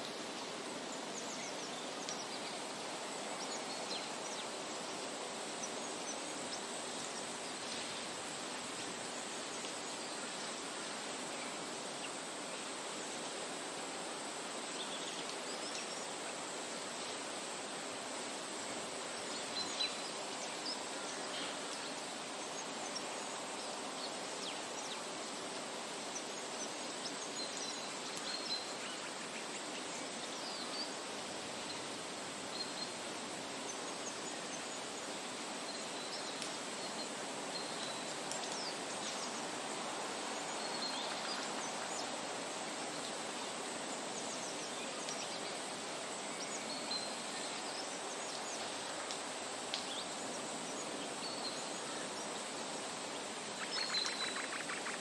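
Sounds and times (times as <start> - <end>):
steady background hiss: 0.0 - 55.0.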